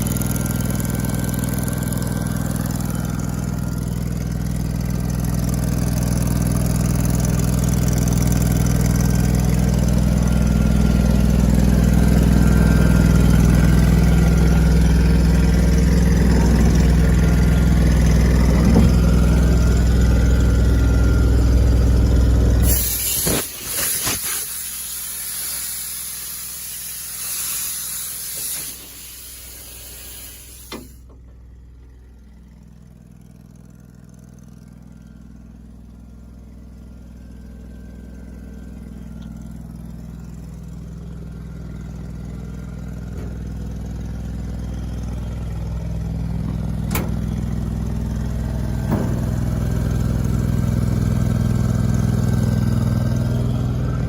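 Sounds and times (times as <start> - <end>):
truck engine idling: 0.0 - 23.0, 24.5 - 54.0
loud hiss of escaping air: 22.6 - 31.0.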